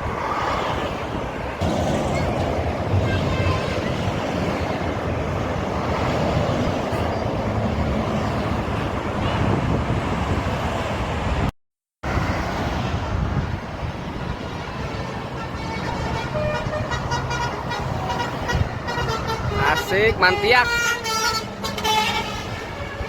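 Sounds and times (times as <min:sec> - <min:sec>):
wind on microphone: 0:00.0 - 0:11.5, 0:12.1 - 0:20.7
traffic roaring past: 0:00.0 - 0:23.0.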